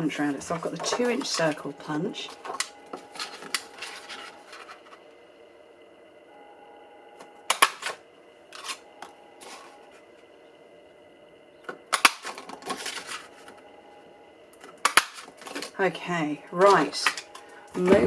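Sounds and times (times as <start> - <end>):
paper being handled: 0.2 - 5.0
paper punch clacking: 7.5 - 8.0, 14.8 - 15.7.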